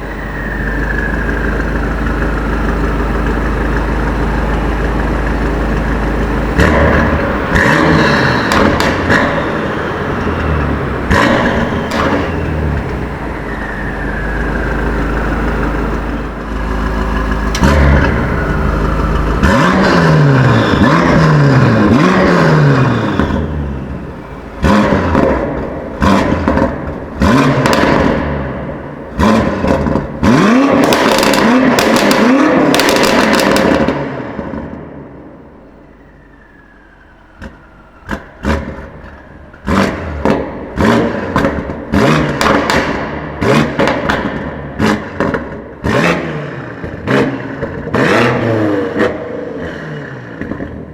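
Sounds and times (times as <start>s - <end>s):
falling whistle: 0.0s - 3.5s, 7.1s - 16.4s, 17.9s - 21.5s, 35.8s - 38.1s
quick throttle blips: 0.0s - 26.8s
car engine revving: 0.0s - 50.9s
exhaust pops and bangs: 1.1s - 13.6s, 24.6s - 35.0s, 37.4s - 49.2s.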